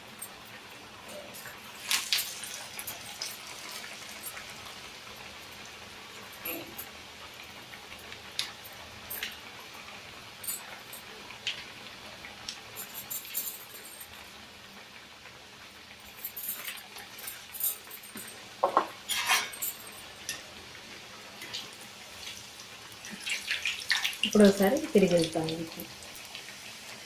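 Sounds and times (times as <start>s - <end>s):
fritters frying in oil: 0.0s - 27.0s
metal utensil clinking on pan: 16.3s - 20.4s.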